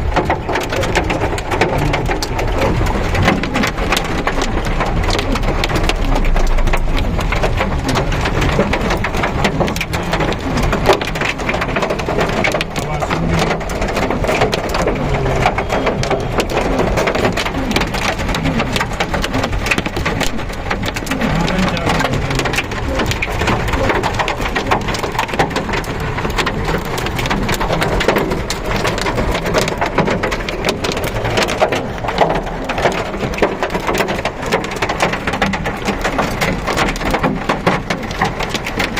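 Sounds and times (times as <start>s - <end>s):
hailstones striking hard surfaces: 0.0s - 38.9s
heavy rain: 0.0s - 38.9s.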